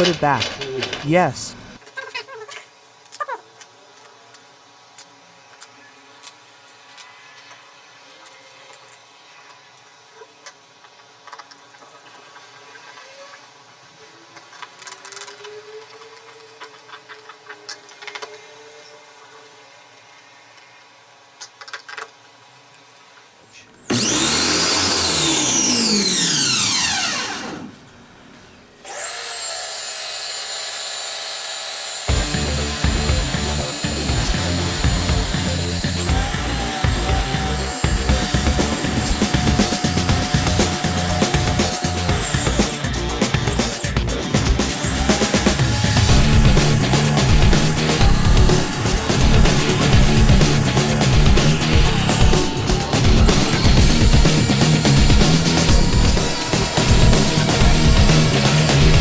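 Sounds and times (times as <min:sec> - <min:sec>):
plastic parts clicking and tapping: 0:21.4 - 0:22.1
pressure washer motor whine: 0:23.9 - 0:28.0, 0:28.8 - 0:59.0.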